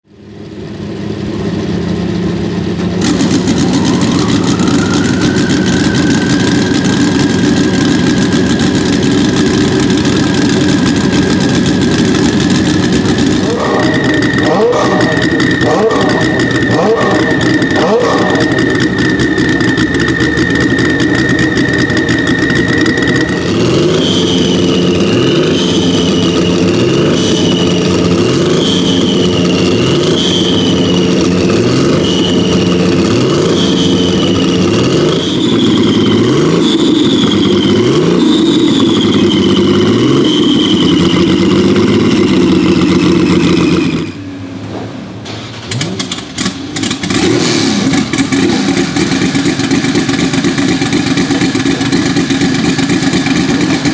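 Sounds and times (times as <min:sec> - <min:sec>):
race car engine revving: 0:00.9 - 0:44.4, 0:45.4 - 0:53.9
high steady whine: 0:02.7 - 0:44.4.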